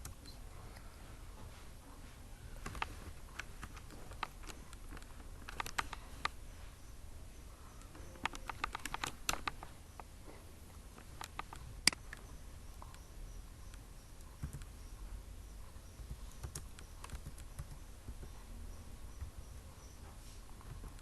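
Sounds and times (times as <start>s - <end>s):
faint low hum: 0.0s - 21.0s
computer mouse clicks: 2.6s - 6.4s, 7.8s - 10.1s, 11.0s - 14.8s, 15.8s - 18.4s.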